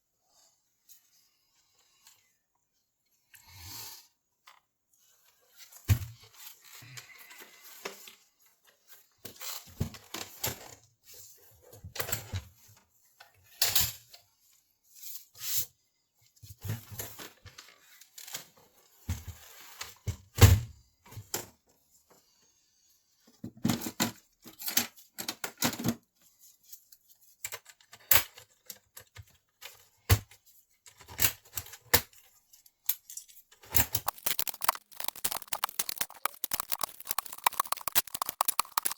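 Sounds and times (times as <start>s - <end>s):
plastic keyboard clicks and knocks: 34.0s - 38.9s.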